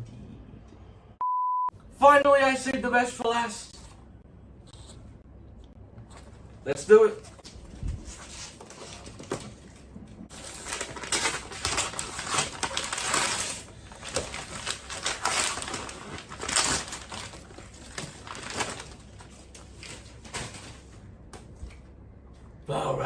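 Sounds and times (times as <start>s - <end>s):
wrapping paper tearing and crumpling: 10.3s - 20.8s.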